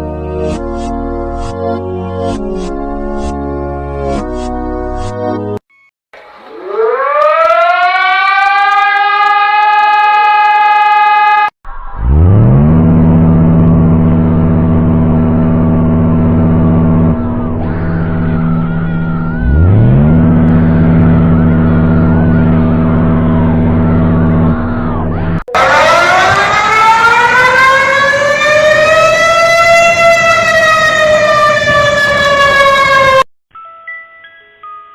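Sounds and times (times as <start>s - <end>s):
warning siren wailing: 6.3s - 33.3s.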